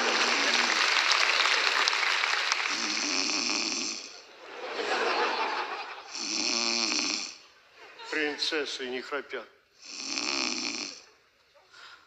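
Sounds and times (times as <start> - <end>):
woman snoring: 2.6 - 4.2, 6.1 - 7.4, 9.8 - 11.1.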